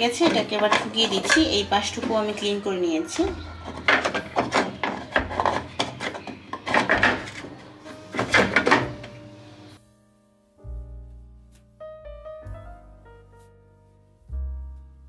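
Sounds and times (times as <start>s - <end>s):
plastic parts clacking and scraping: 0.0s - 9.2s.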